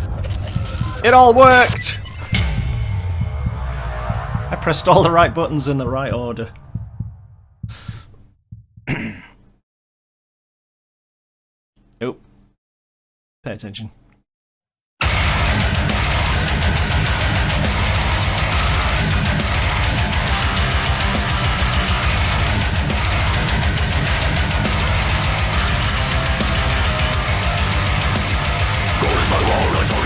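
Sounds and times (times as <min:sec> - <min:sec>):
death metal music: 0:02.3 - 0:07.0, 0:15.0 - 0:30.0.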